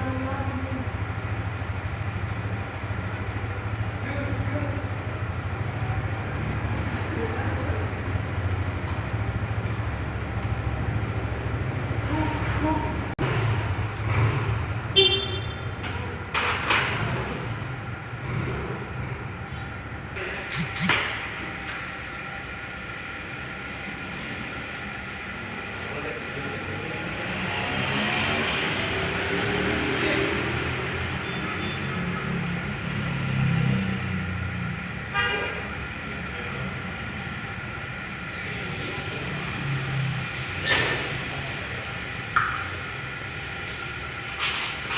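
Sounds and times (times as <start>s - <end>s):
vehicle horn toot: 14.9s - 15.8s, 35.1s - 35.7s
sharp clicks: 20.5s - 21.2s.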